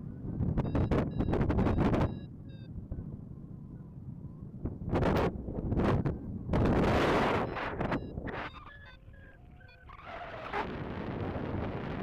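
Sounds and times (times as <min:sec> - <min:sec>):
wind buffeting microphone: 0:00.0 - 0:12.0
short electronic beeps: 0:00.6 - 0:02.7, 0:07.3 - 0:09.9.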